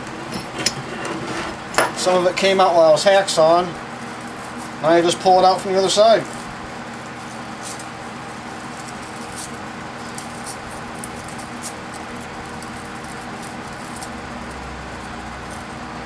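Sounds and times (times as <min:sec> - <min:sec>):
wire clicks and scrapes: 0:00.0 - 0:02.5.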